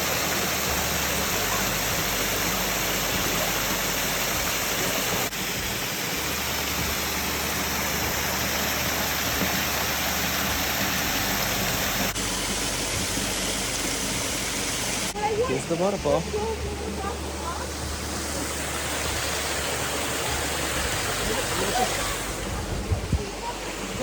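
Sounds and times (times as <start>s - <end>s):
water rushing from waterfall: 0.0s - 24.0s.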